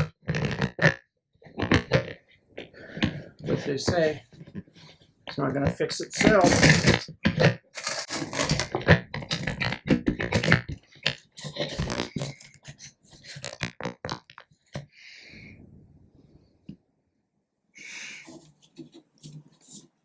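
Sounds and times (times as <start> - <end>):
breathy exhale: 14.9 - 15.6, 17.8 - 18.4.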